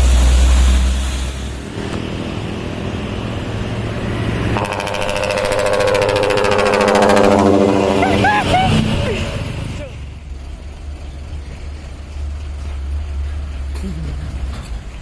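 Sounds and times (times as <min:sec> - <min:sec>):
truck diesel engine running: 0:00.0 - 0:15.0
multi-trumpet air horn chord: 0:04.6 - 0:08.2.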